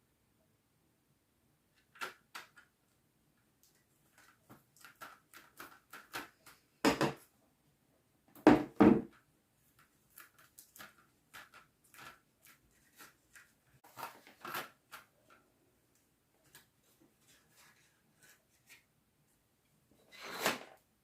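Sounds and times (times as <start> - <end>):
blade scraping plastic sheet: 20.0 - 20.8.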